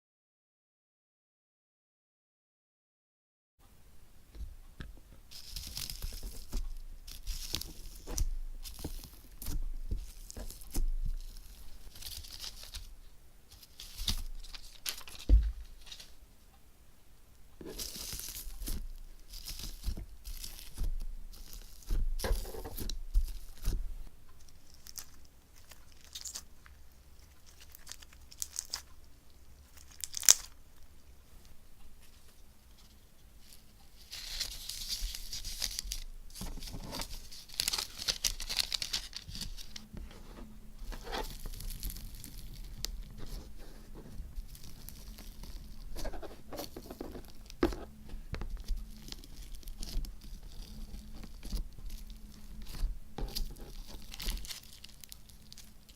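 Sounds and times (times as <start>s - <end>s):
slime crackling and crinkling: 5.2s - 16.2s, 17.6s - 55.9s.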